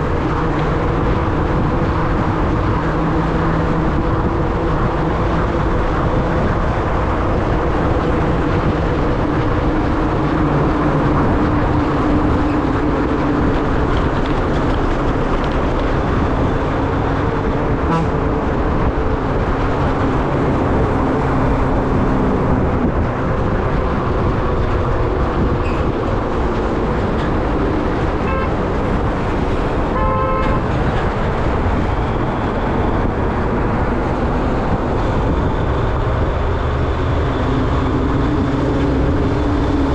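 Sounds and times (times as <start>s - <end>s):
vehicle engine and road noise: 0.0s - 39.9s
vehicle horn honking: 17.9s - 18.2s, 28.2s - 28.6s, 29.9s - 30.7s.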